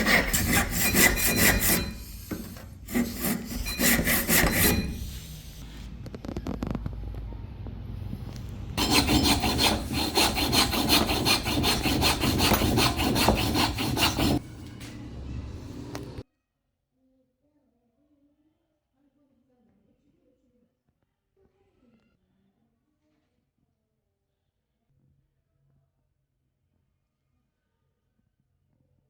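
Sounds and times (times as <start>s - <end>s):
hand tool scraping: 0.0s - 5.6s, 8.8s - 14.8s.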